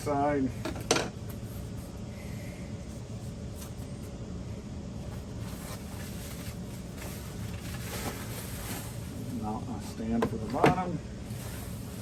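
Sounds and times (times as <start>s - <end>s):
low room hum: 0.0s - 12.0s
light handling of packaging: 5.0s - 12.0s.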